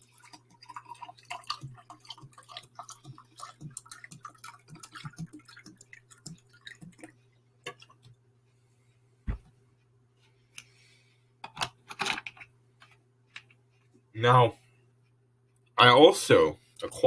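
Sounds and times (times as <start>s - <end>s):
liquid glugging from a bottle: 0.1s - 8.0s.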